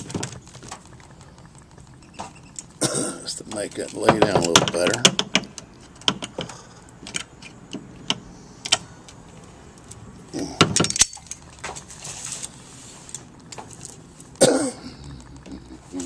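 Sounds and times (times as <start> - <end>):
metallic clicks and clinks: 10.6 - 11.9.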